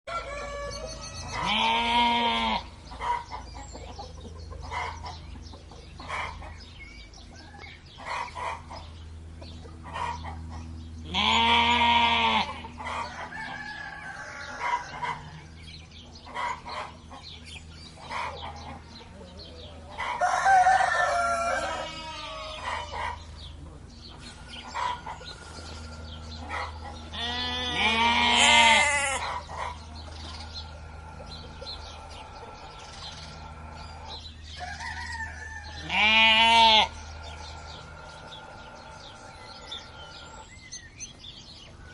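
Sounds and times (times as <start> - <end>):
rooster crowing: 0.1 - 1.5, 12.9 - 15.5, 19.9 - 23.2, 30.6 - 40.5
hens clucking: 0.1 - 41.9.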